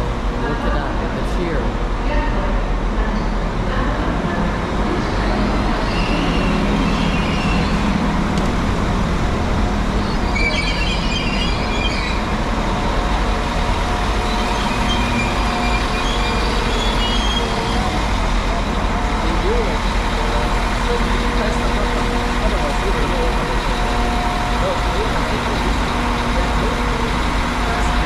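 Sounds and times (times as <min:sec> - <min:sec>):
train rumbling into station: 0:00.0 - 0:28.0.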